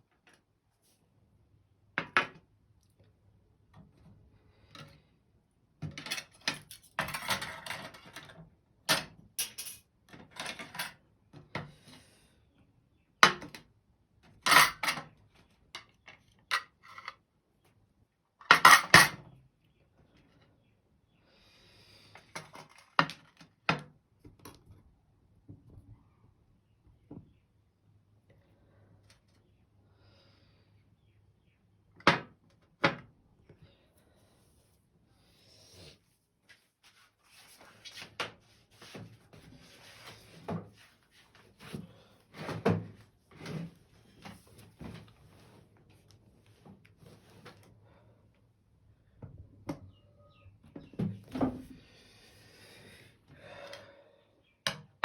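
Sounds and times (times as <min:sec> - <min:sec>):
dishes and cutlery clattering: 0:08.9 - 0:11.0, 0:18.5 - 0:19.2.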